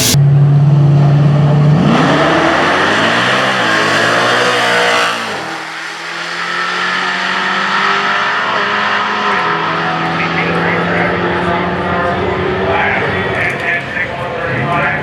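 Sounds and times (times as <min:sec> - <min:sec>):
low engine drone: 0:00.0 - 0:04.6
drag car engine at full throttle: 0:00.0 - 0:15.0.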